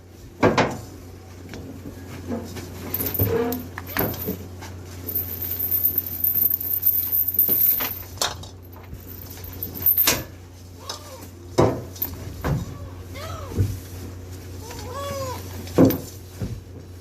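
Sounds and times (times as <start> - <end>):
steady low hum: 0.0 - 17.0
metallic clinks and knocks: 2.9 - 4.4, 5.1 - 10.3.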